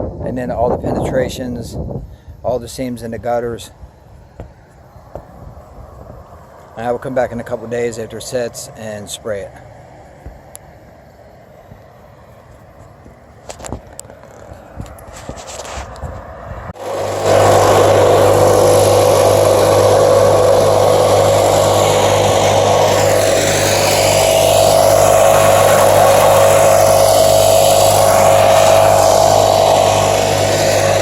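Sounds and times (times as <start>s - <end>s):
loud hiss: 16.8s - 31.0s
small engine machine humming: 16.8s - 31.0s.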